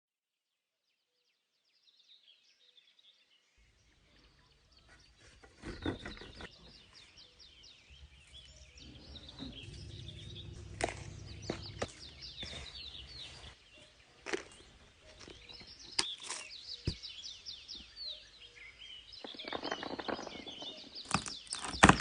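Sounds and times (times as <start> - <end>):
small birds chirping: 0.9 - 22.0
low rumble: 8.2 - 13.6.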